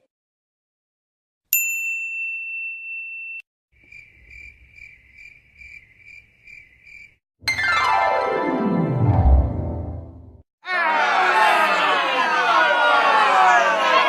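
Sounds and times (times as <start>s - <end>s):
cricket chirping: 3.8s - 7.2s.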